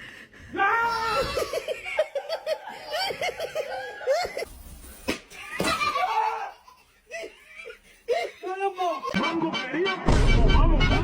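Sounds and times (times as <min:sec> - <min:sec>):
person laughing: 0:01.2 - 0:04.5, 0:05.4 - 0:10.1.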